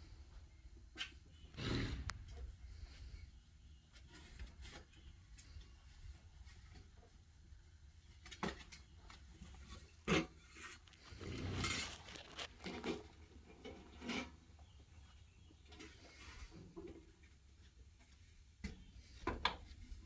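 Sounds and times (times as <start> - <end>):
shovel scraping through sawdust: 10.4 - 13.0.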